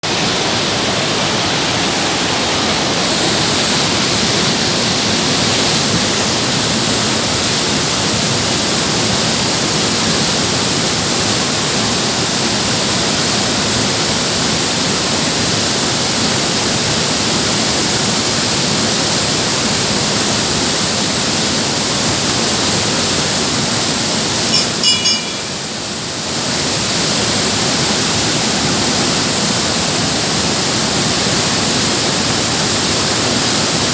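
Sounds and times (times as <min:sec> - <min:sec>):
short high chirps: 0:24.6 - 0:25.8.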